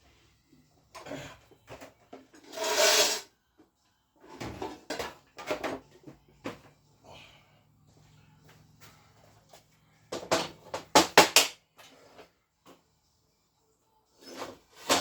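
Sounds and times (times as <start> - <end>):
loud scraping slide: 2.5 - 3.2.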